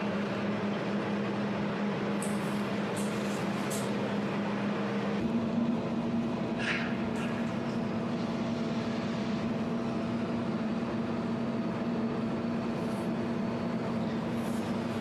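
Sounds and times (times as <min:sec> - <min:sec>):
laser welding machine hum: 0:00.0 - 0:15.0.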